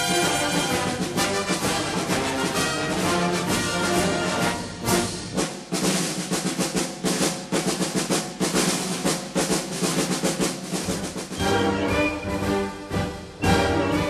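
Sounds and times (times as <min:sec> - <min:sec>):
orchestral brass and strings chords: 0:00.0 - 0:05.4, 0:11.4 - 0:14.0
rapid snare and bass drum strokes: 0:00.0 - 0:14.0.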